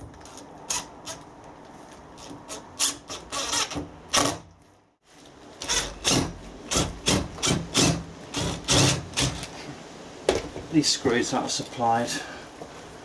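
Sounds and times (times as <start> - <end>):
screwdriver rasping creaks: 0.0 - 1.3, 1.9 - 4.4, 5.6 - 9.6.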